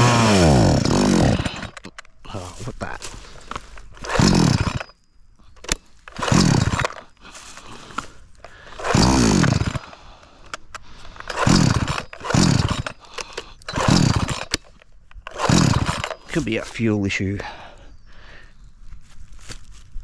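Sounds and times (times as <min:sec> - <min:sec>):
chainsaw pull-start bursts: 0:00.0 - 0:02.1, 0:04.0 - 0:05.0, 0:05.6 - 0:16.6.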